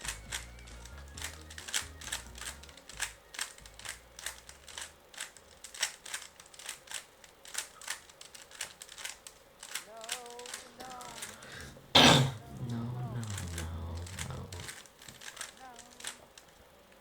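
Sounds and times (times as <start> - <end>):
low background music: 0.0 - 5.1
puzzle cube plastic clicks: 0.0 - 11.8, 12.6 - 17.0.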